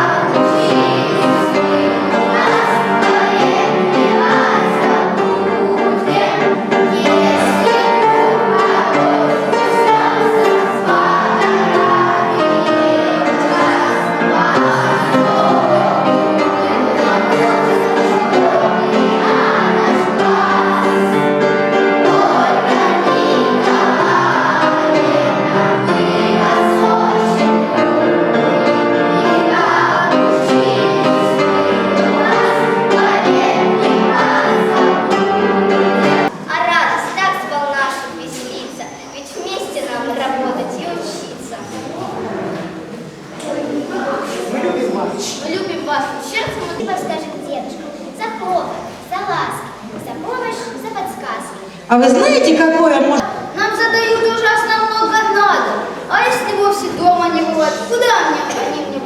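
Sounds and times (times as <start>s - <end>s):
group of voices singing: 0.0s - 36.3s, 51.9s - 53.6s
instrumental accompaniment: 0.0s - 36.3s.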